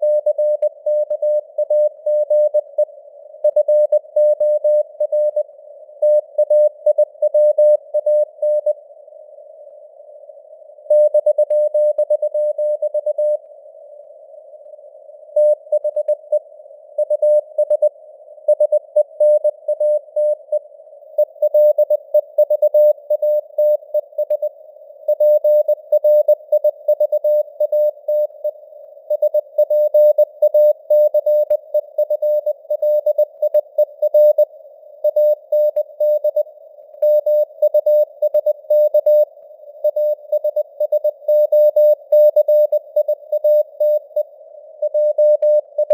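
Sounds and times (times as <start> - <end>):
morse code keyed tone: 29.1 - 44.2.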